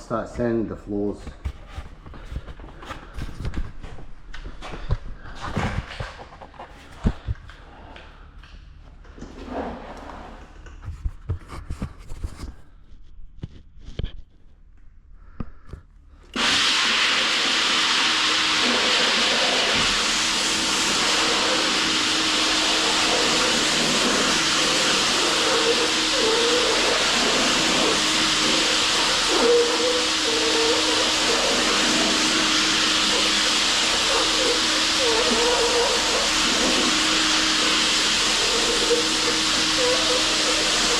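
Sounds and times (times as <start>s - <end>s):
floor sander hissing: 16.3s - 40.9s.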